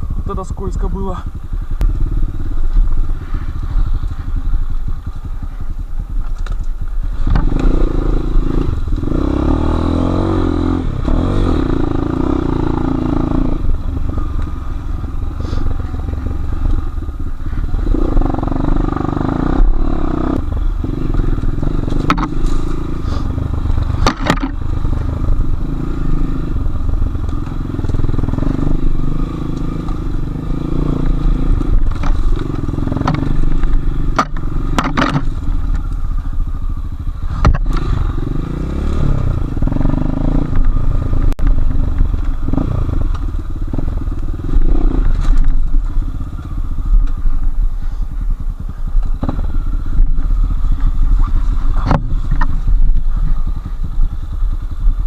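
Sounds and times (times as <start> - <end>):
motorcycle engine revving: 0.0 - 55.0
knocks and clatters from bike: 21.9 - 22.6, 23.9 - 24.6, 31.6 - 36.0, 37.3 - 38.0.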